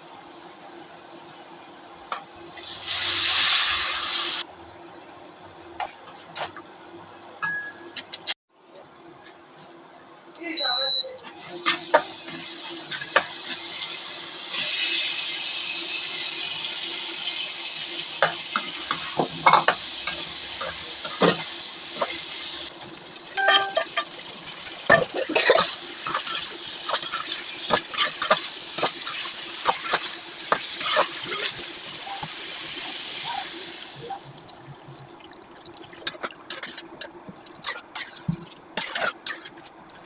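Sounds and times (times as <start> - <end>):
food sizzling in a pan: 0.0 - 4.5, 11.2 - 40.0
spatula scraping a pan: 24.9 - 32.3, 36.0 - 40.0.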